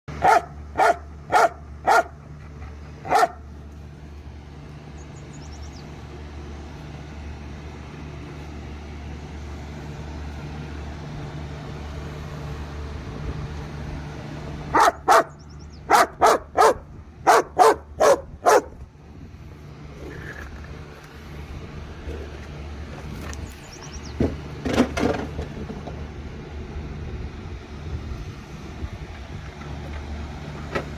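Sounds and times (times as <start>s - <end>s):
steady low hum: 0.1s - 30.9s
dog barking: 0.2s - 2.2s, 3.0s - 3.4s, 14.7s - 18.8s.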